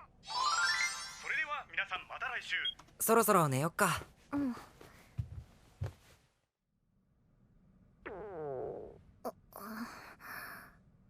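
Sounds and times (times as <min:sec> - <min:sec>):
cartoon stomach growl: 0:08.0 - 0:09.4.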